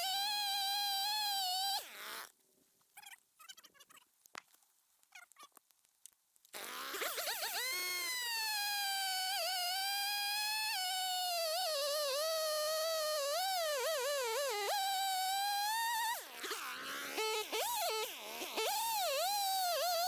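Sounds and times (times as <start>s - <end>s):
chainsaw cutting a log: 0.0s - 2.3s, 6.5s - 20.0s.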